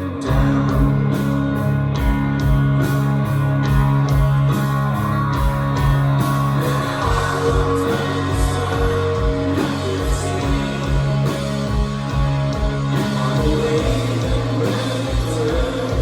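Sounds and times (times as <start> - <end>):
guitar chords: 0.0 - 16.0
rock band playing: 0.0 - 16.0.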